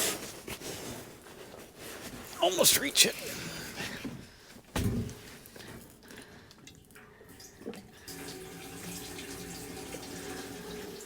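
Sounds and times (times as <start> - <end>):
gasoline pouring into fuel tank: 7.2 - 11.0.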